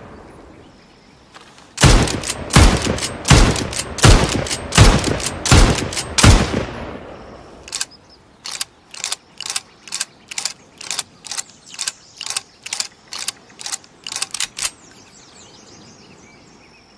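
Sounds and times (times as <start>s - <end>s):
rifle mechanism clicking: 1.8s - 6.4s, 7.7s - 14.8s
rifle shots echoing: 1.8s - 7.8s.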